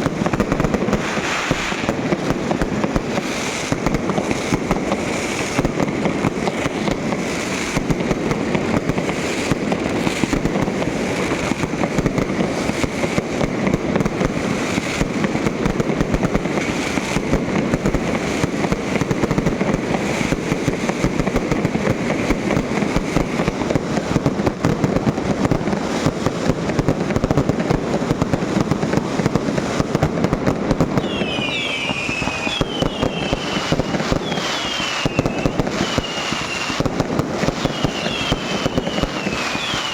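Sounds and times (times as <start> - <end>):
fireworks crackling bangs: 0.0 - 39.9
whistling fireworks: 0.0 - 39.9.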